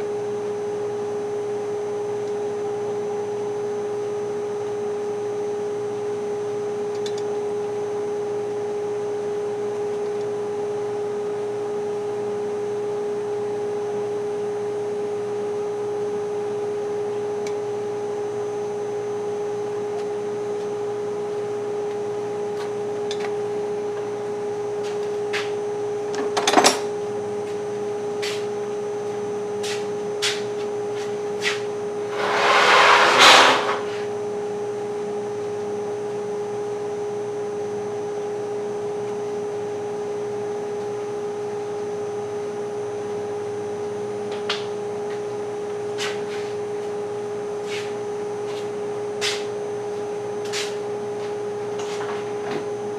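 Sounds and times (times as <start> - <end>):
steady hum: 30.9 - 34.4.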